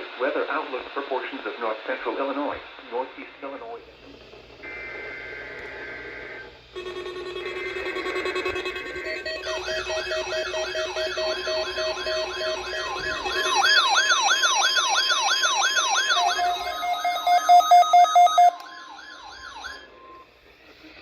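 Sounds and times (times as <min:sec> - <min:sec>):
warbling siren-like alarm: 0:06.2 - 0:20.3
loud fast beeping: 0:06.8 - 0:20.2
steady repeated beeps: 0:06.8 - 0:20.4.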